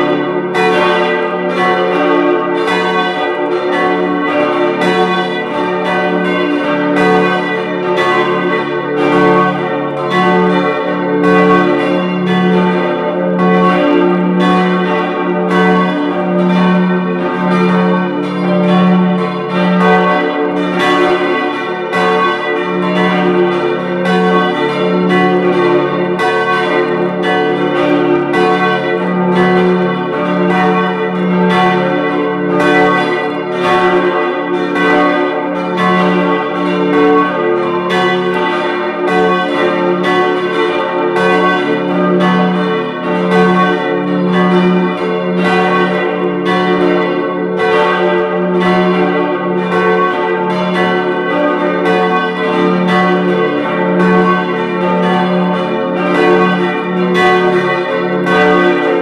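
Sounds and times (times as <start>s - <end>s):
church bells ringing: 0.0s - 59.0s.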